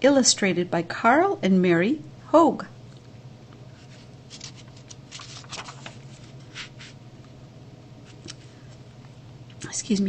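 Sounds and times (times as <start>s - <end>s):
steady low hum: 0.0s - 10.0s
book pages rustling and turning: 3.8s - 7.0s.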